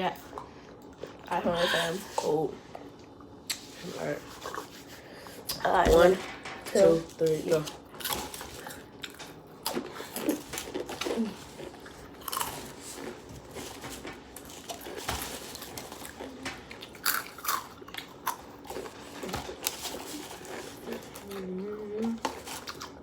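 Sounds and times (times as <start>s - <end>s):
people crunching chips: 7.0s - 23.0s.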